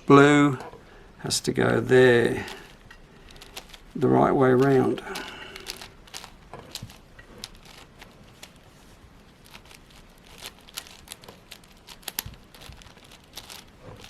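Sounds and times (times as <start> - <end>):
puzzle cube plastic clicks: 2.5 - 8.6, 9.4 - 14.0.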